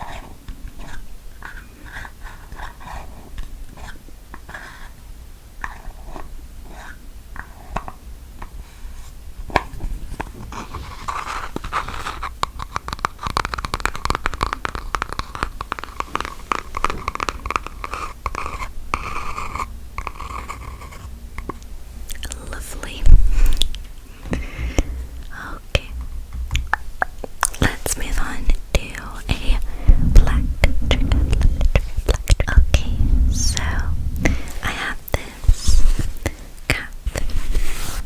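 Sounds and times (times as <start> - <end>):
rapid scratching: 10.1 - 21.2, 27.5 - 38.0.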